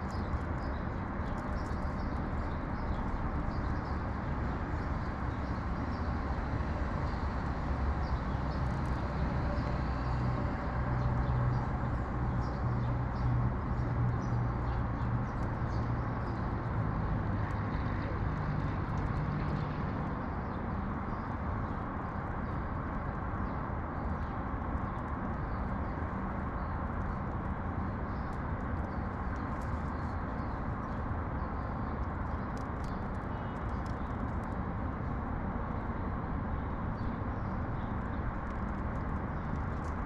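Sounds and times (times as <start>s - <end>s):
urban traffic noise: 0.0s - 40.0s.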